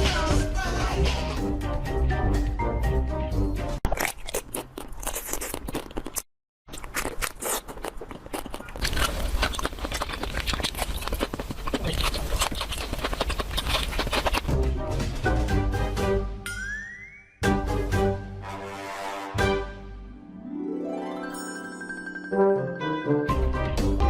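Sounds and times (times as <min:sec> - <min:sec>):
dense crunching and crackling: 0:04.0 - 0:14.5
music with pitched notes: 0:19.4 - 0:24.0.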